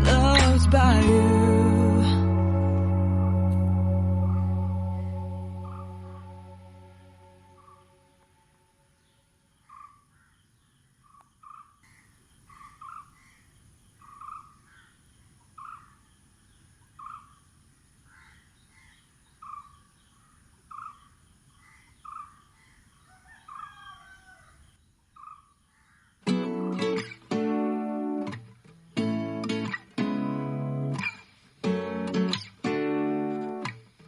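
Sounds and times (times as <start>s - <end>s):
guitar music: 0.0s - 8.1s, 26.3s - 34.0s
bird harsh calls: 5.0s - 8.1s, 11.1s - 15.0s.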